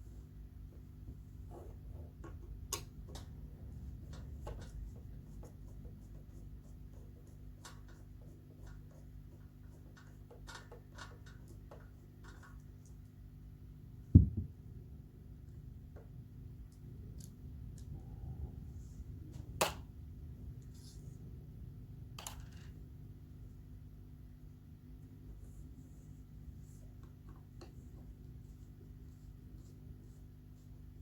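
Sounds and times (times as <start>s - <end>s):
steady low hum: 13.4s - 22.2s
heavy thud: 14.2s - 14.6s.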